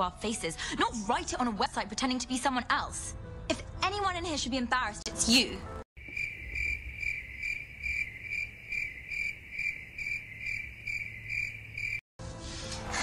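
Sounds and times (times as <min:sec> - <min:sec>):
soft background music: 0:00.0 - 0:05.9, 0:12.2 - 0:13.0
crickets chirping: 0:06.0 - 0:12.0.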